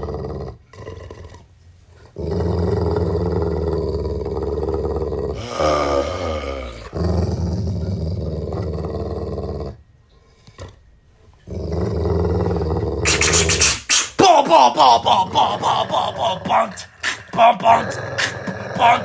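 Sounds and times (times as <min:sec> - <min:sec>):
dog growling: 0:00.0 - 0:13.8, 0:14.8 - 0:19.0
dog snarling: 0:11.5 - 0:14.2, 0:15.1 - 0:19.0.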